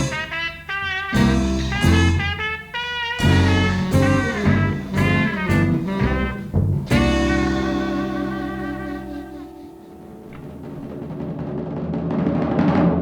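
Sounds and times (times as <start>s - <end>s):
low bass line: 0.0s - 0.3s, 1.2s - 2.4s, 3.2s - 9.8s
brass instruments playing melody: 0.0s - 10.6s.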